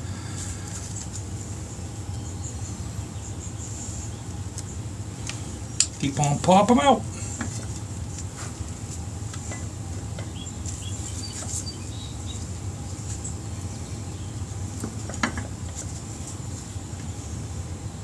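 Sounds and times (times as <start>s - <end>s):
steady background hum: 0.0s - 18.0s.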